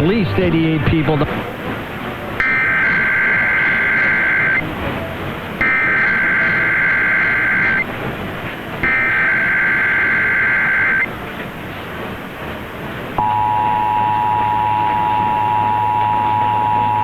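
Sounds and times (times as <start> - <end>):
radio static: 0.0 - 1.5, 2.4 - 4.8, 5.6 - 7.9, 8.8 - 11.1, 13.2 - 17.0
buzzy digital data tone: 2.4 - 4.7, 5.6 - 7.9, 8.8 - 11.1, 13.2 - 17.0.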